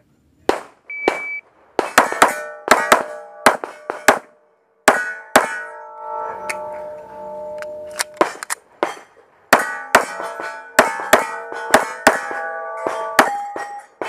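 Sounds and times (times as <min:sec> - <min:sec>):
gunshots: 0:00.5 - 0:04.3
steel targets ringing: 0:01.1 - 0:14.0.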